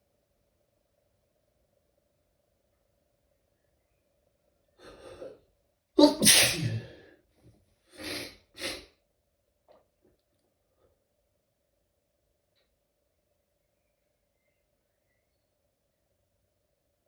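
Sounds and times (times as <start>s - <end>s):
stifled sneezes: 6.0s - 7.1s.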